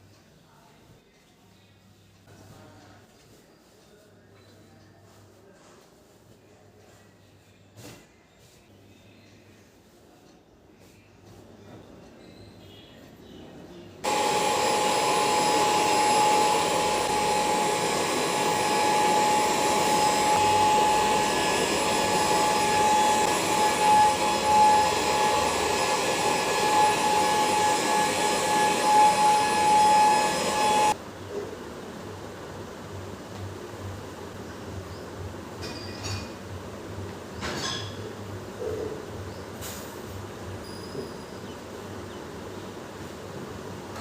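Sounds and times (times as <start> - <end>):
vacuum cleaner running: 14.0 - 32.4.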